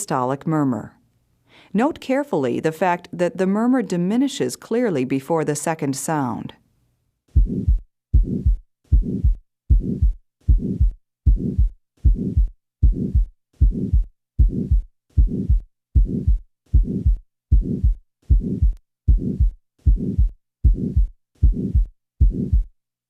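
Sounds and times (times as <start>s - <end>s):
heart murmur: 7.3s - 22.7s
heartbeat: 7.3s - 22.8s.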